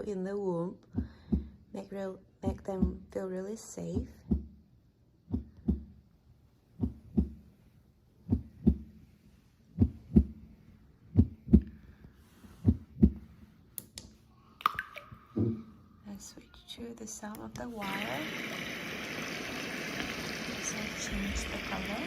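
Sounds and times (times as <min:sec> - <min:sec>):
recorded heartbeat thumps: 0:00.9 - 0:01.7, 0:02.4 - 0:03.2, 0:03.9 - 0:06.1, 0:06.7 - 0:07.6, 0:08.2 - 0:09.0, 0:09.7 - 0:11.8, 0:12.6 - 0:13.4, 0:15.4 - 0:15.8.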